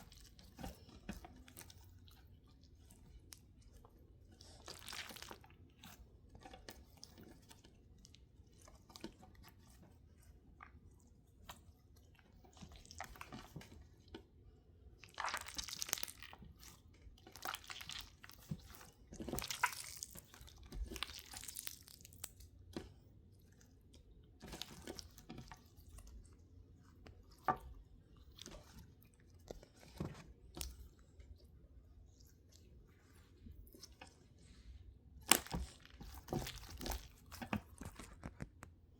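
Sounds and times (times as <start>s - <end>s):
slime squelching and popping: 0.0s - 9.5s, 12.0s - 22.7s, 35.1s - 38.8s.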